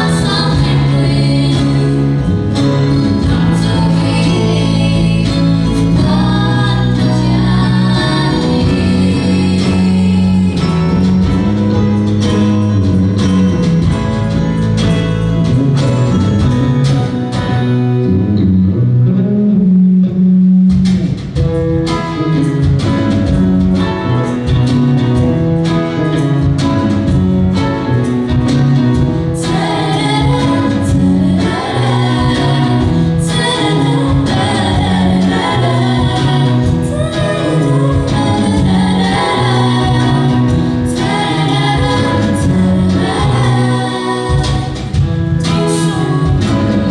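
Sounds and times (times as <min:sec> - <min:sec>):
person singing: 0:00.0 - 0:11.6, 0:29.1 - 0:46.9
guitar accompaniment: 0:00.0 - 0:46.9.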